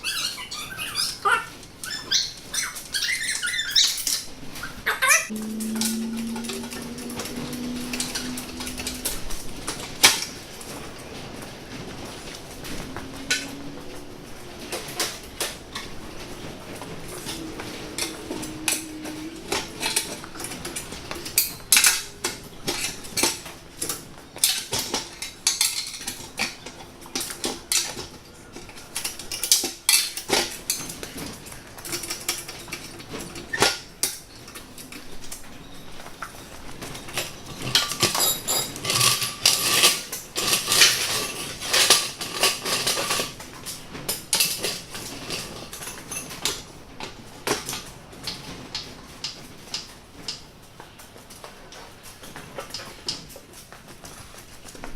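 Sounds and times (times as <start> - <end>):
metallic clanks of steel parts: 5.4 - 34.9, 36.9 - 46.6.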